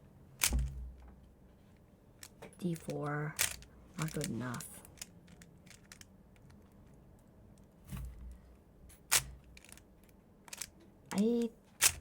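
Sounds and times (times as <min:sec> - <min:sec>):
plastic cube clacking: 0:02.2 - 0:06.7, 0:09.1 - 0:12.0.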